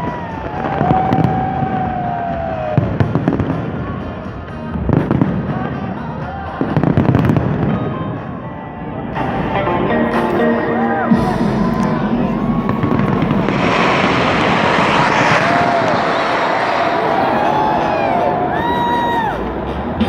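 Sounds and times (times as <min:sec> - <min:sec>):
descending firework whistle: 0:00.0 - 0:03.4, 0:10.6 - 0:19.7
fireworks bangs: 0:00.0 - 0:03.9, 0:06.7 - 0:08.3, 0:11.1 - 0:19.6
fireworks crackling: 0:00.0 - 0:05.7, 0:10.2 - 0:19.6.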